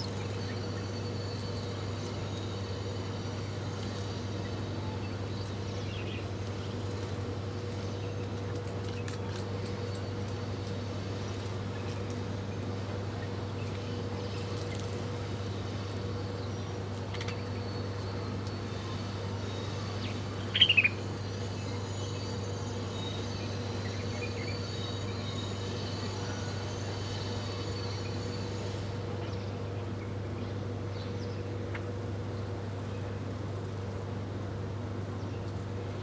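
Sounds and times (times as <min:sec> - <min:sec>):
faint high-pitched calls: 0:20.5 - 0:21.1.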